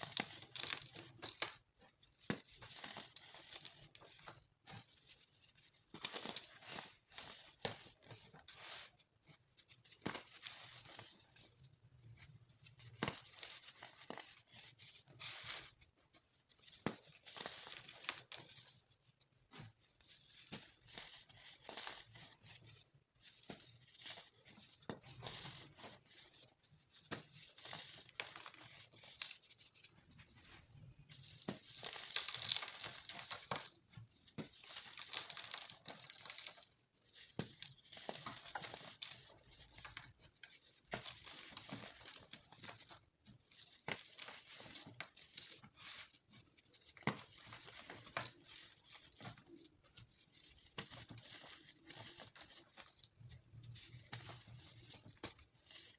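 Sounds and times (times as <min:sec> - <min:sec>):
baking soda being crushed: 0:31.4 - 0:33.8, 0:34.4 - 0:36.8.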